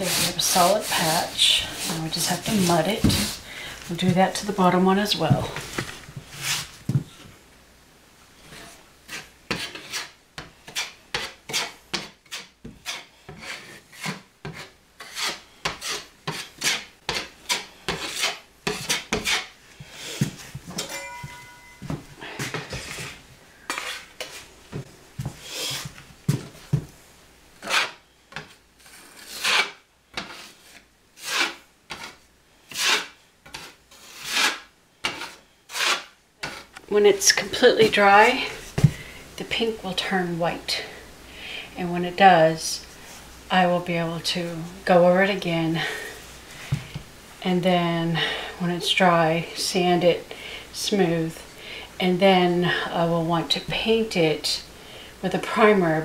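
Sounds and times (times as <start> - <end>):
drywall knife scraping spackle: 0.0 - 3.4, 8.5 - 20.2, 22.5 - 24.5, 27.6 - 36.7.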